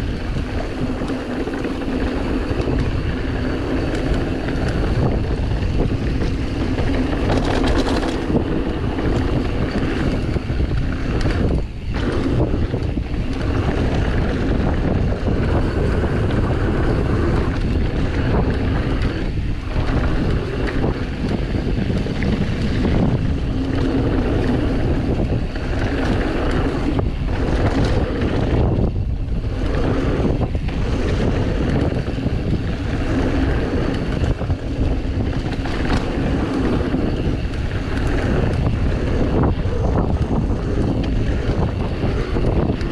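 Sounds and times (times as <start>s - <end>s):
bike tyre and frame rattle: 0.0s - 42.9s
wind rushing over microphone: 0.0s - 42.9s.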